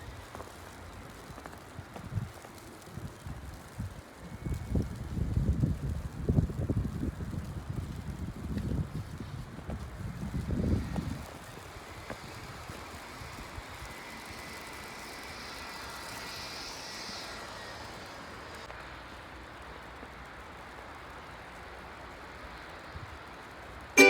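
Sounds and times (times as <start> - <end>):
wind buffeting microphone: 0.0 - 14.2.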